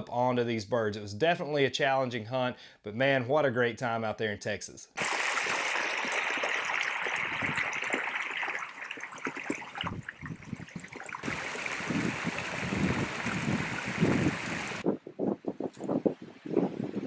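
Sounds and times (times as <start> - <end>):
strong wind buffeting microphone: 9.8 - 17.0.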